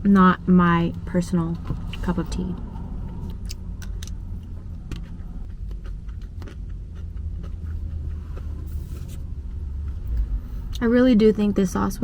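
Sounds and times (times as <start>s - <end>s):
low rumble: 0.0s - 12.0s
person chewing: 3.0s - 10.8s.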